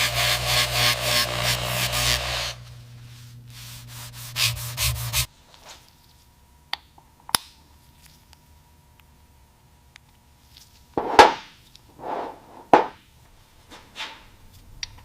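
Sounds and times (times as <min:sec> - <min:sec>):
sanding strokes: 0:03.6 - 0:05.3.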